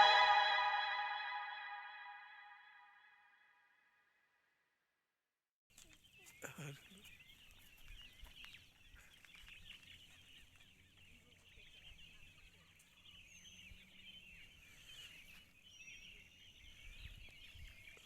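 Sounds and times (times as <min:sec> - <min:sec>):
faint birds chirping: 0:05.7 - 0:18.0.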